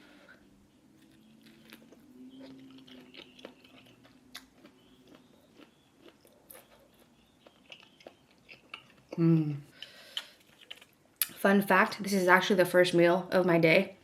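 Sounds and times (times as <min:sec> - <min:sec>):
wet chewing: 0:01.0 - 0:09.2, 0:09.8 - 0:11.3.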